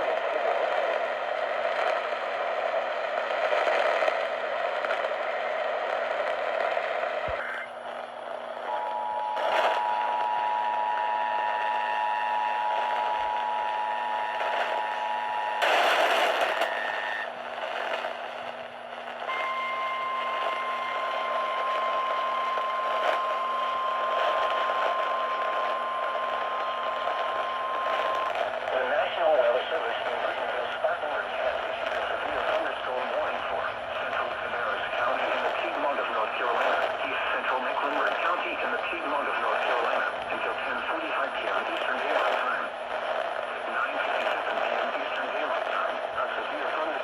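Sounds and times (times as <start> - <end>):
radio static hiss: 0.0 - 47.0
two-tone attention signal: 19.2 - 28.4.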